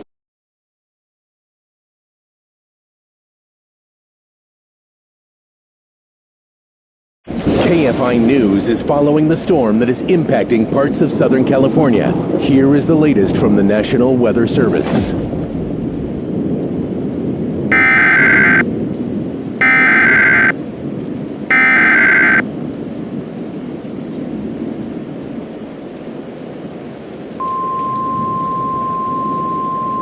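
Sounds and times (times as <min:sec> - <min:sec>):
thunder: 0:07.3 - 0:09.3, 0:10.3 - 0:30.0
rain: 0:07.3 - 0:30.0
harsh digital warbling bursts: 0:17.7 - 0:18.6, 0:19.6 - 0:20.5, 0:21.5 - 0:22.4
single-pitch warning alarm tone: 0:17.7 - 0:18.6, 0:19.6 - 0:20.5, 0:21.5 - 0:22.4, 0:27.4 - 0:30.0.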